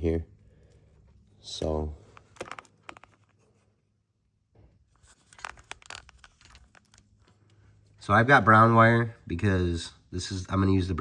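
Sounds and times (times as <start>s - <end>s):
electrical wire scratching and clicking: 2.2s - 3.5s, 5.0s - 7.4s.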